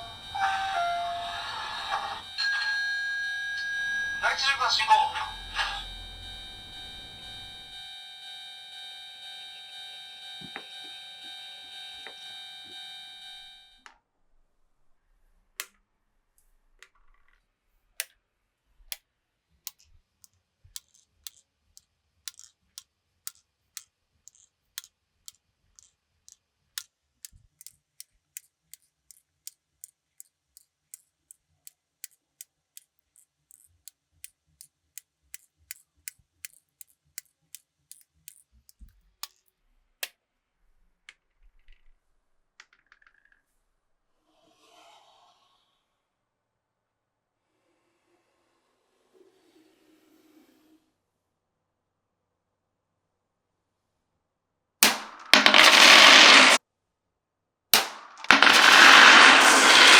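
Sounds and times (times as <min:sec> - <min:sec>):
steady ringing tone: 0:00.0 - 0:13.6
marbles clicking on track: 0:19.7 - 0:21.5, 0:22.2 - 0:27.8, 0:35.3 - 0:39.4, 0:54.8 - 0:56.6, 0:57.8 - 0:59.9.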